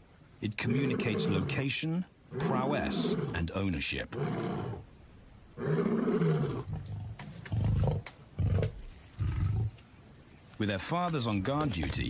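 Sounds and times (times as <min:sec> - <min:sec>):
lion grunts: 0:00.6 - 0:01.6, 0:02.3 - 0:03.4
lion roaring: 0:00.6 - 0:01.6, 0:02.3 - 0:03.4, 0:04.1 - 0:04.8, 0:05.6 - 0:09.8.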